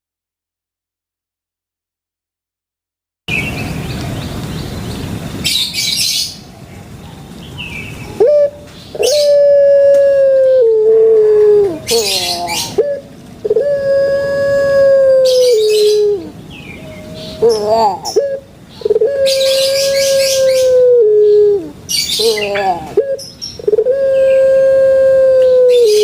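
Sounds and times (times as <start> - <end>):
dove cooing: 8.0 - 26.0.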